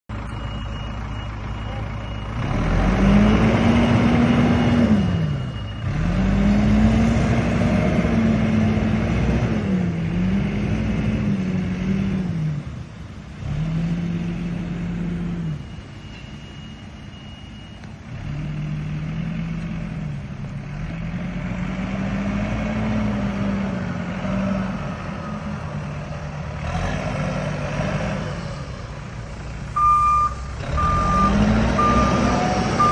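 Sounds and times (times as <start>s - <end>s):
diesel engine revving: 0.1s - 15.9s, 17.8s - 32.9s
reversing alarm beeping: 0.2s - 7.2s, 15.0s - 18.6s, 29.8s - 32.9s.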